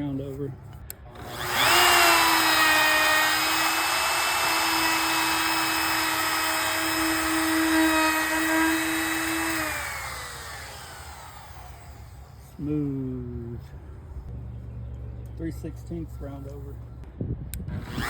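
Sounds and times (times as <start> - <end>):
wood router whining: 1.2 - 12.5, 17.8 - 18.0.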